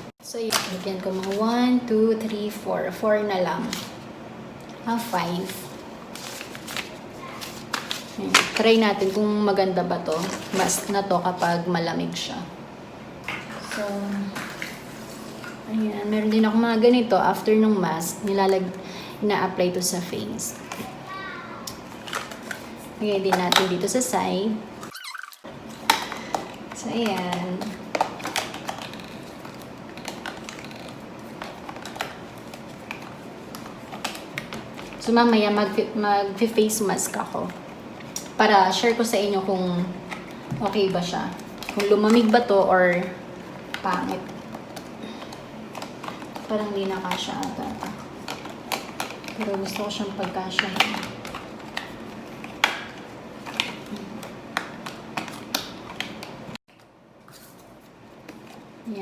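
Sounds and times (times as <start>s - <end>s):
light clicks and taps of packets: 40.1s - 57.6s.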